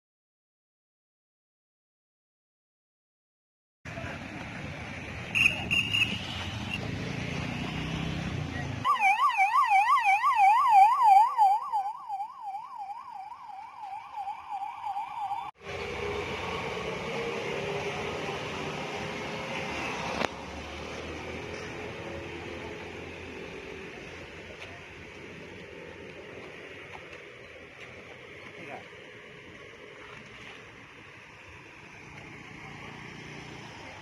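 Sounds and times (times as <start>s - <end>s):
low rumble of vehicles: 3.9s - 34.0s
emergency siren yelping: 8.8s - 15.6s.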